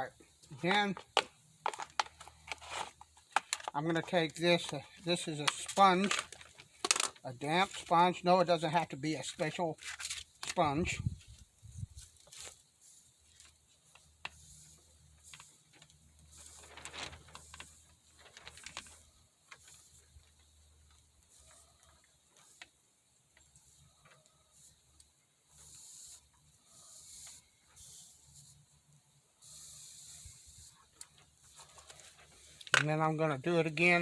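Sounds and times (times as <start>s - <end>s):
soldering iron sizzling hiss: 11.1s - 16.7s, 18.8s - 32.6s.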